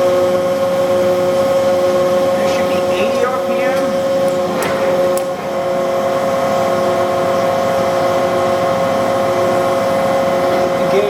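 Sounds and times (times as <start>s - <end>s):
lathe mechanical whine: 0.0s - 11.0s.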